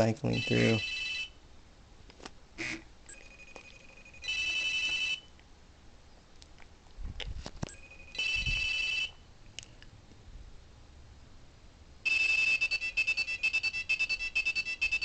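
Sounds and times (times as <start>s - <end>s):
high-pitched electronic alert tone: 0.3s - 0.9s.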